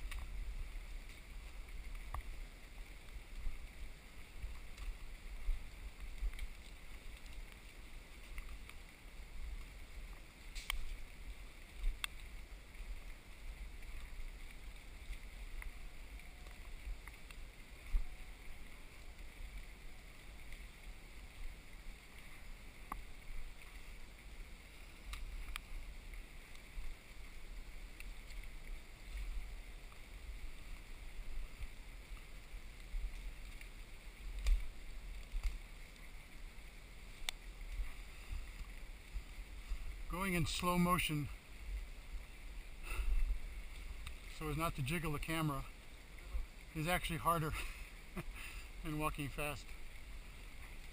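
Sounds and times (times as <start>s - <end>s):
wind rumble on microphone: 40.8s - 44.4s.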